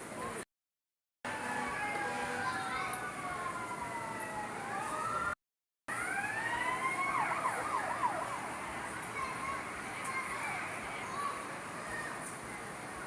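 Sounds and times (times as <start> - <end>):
emergency vehicle siren wailing: 1.3 - 10.9.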